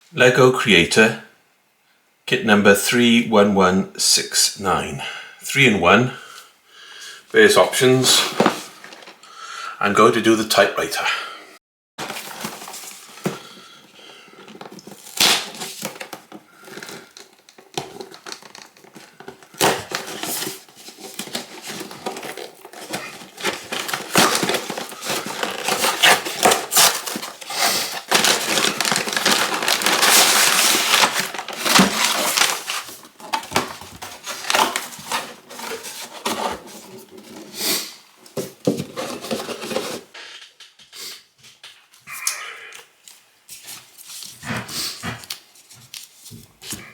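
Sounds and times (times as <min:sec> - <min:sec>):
packaging crinkling and tearing: 0:12.0 - 0:37.4.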